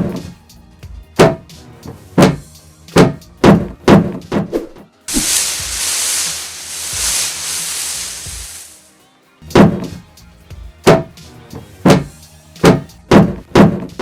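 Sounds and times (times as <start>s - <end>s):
hissing rasp: 5.1s - 8.9s.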